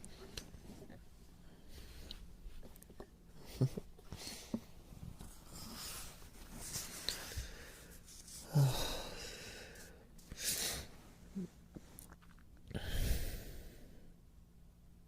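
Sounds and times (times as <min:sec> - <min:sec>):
man breathing and sighing: 0:06.8 - 0:11.9, 0:12.7 - 0:14.0.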